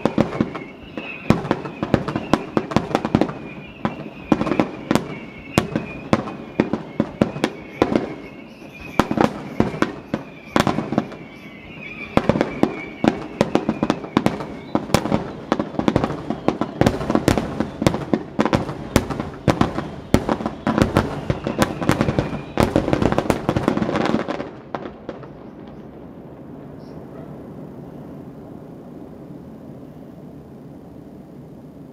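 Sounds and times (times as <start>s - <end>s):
fireworks bangs and crackles: 0.0s - 28.2s.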